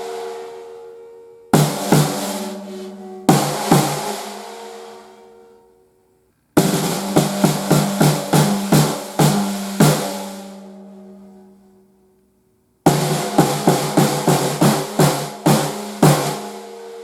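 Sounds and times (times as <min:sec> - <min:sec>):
snare drum strikes: 0:06.6 - 0:10.4, 0:12.9 - 0:16.6.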